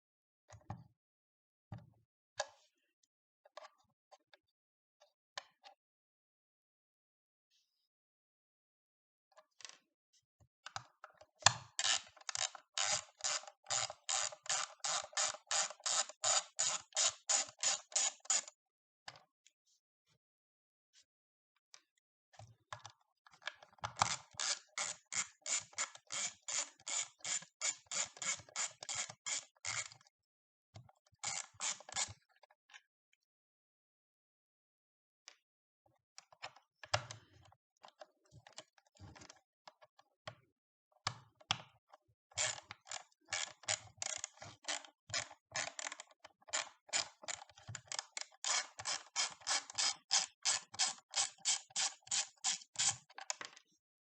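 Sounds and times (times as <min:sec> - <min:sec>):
ratcheting hand tool clicking: 0:46.6 - 0:53.0.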